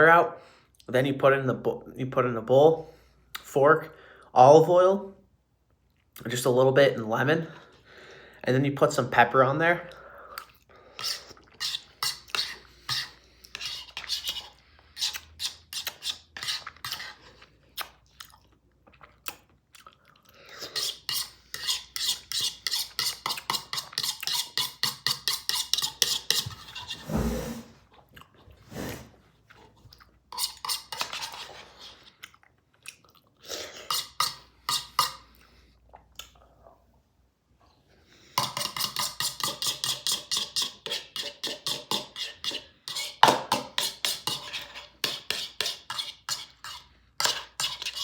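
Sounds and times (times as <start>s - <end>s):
fork scraping against a bowl: 11.0s - 17.6s, 20.5s - 27.6s, 30.3s - 32.1s, 33.6s - 35.3s, 38.3s - 48.0s.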